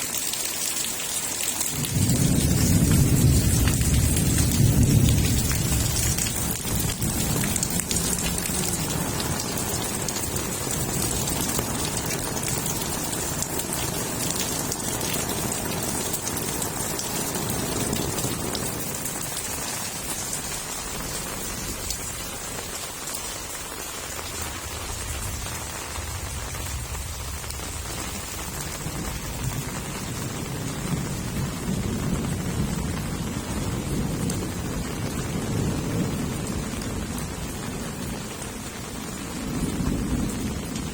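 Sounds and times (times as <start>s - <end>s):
heavy rain pouring: 0.0s - 40.9s
low rolls of thunder: 1.7s - 22.8s, 24.2s - 40.9s.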